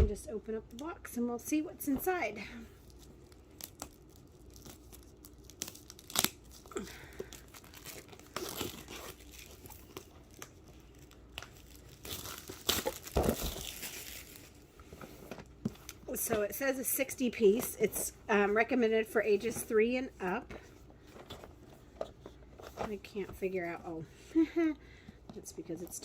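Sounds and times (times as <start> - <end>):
cardboard tearing and crinkling: 2.8 - 14.6.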